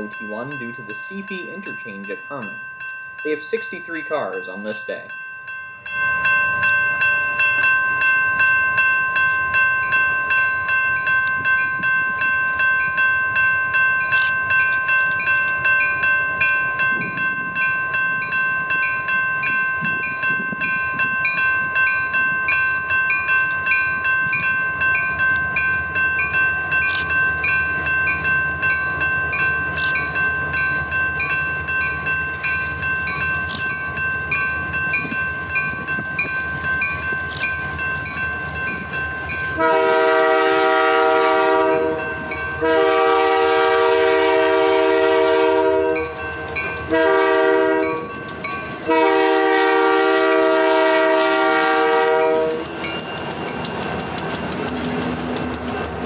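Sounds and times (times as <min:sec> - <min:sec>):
freight train rumbling past: 0:00.0 - 0:56.0
railroad crossing bell ringing: 0:00.0 - 0:56.0
sharp metallic clicks: 0:52.5 - 0:56.0.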